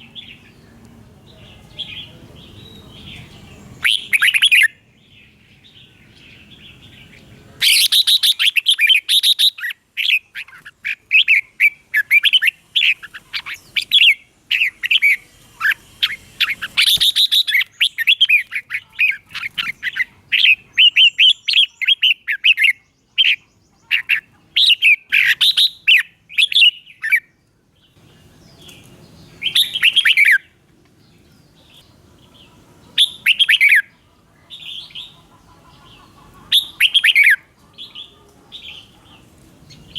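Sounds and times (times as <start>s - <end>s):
bird singing chirpy whistles: 3.8s - 4.8s, 7.6s - 18.6s, 28.7s - 30.5s, 33.0s - 33.9s, 36.5s - 37.4s.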